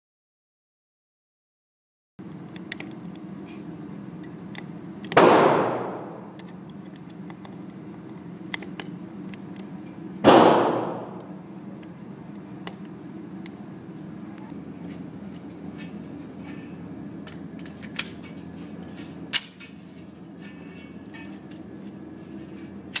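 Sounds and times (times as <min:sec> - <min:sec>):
pistol shots with echo: 0:05.2 - 0:06.3, 0:10.2 - 0:11.2.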